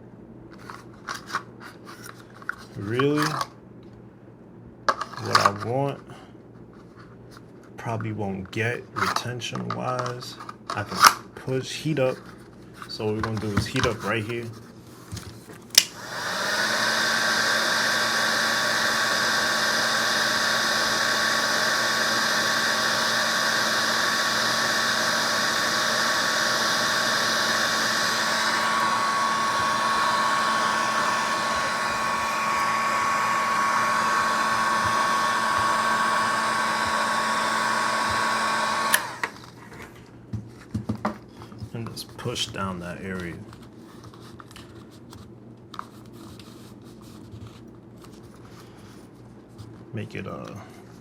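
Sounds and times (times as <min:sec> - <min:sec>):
heat gun blowing with whine: 0:15.7 - 0:39.6
heat gun switch click: 0:15.8 - 0:16.2, 0:28.4 - 0:39.4.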